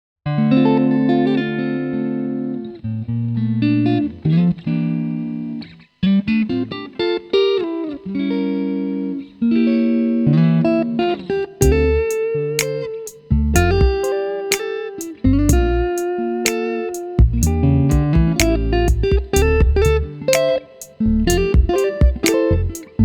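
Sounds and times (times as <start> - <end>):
guitar playing chords: 0.3 - 23.0
deep bass: 11.6 - 12.1, 13.3 - 14.0, 15.2 - 15.9, 17.2 - 20.1, 21.0 - 23.0
percussion: 11.6 - 23.0.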